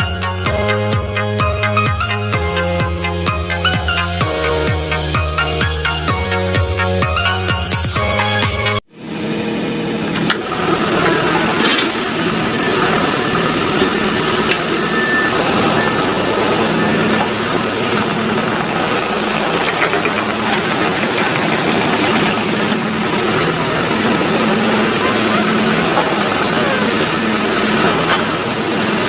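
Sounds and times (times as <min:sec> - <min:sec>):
heavy vehicle engine running: 0:00.0 - 0:29.0.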